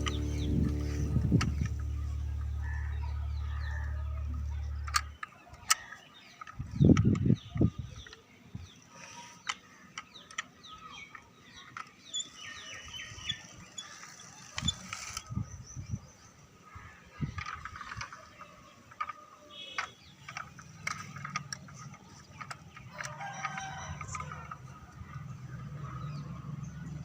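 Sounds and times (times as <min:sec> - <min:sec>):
plastic toy mechanisms ratcheting: 0:04.7 - 0:07.4, 0:09.0 - 0:15.4, 0:17.3 - 0:24.7.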